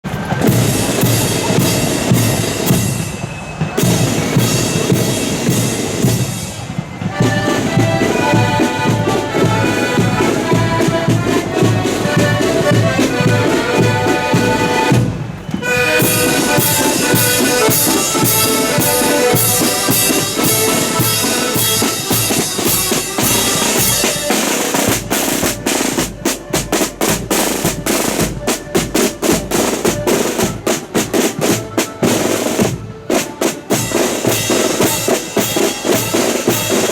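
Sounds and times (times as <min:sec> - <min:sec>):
snare and bass drums: 0:00.1 - 0:36.9
accordion melody: 0:04.3 - 0:36.9.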